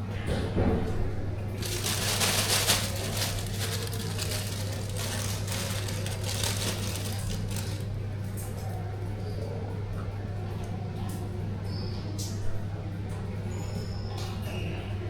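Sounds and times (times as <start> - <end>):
rustling crinkling handling: 1.6 - 8.0.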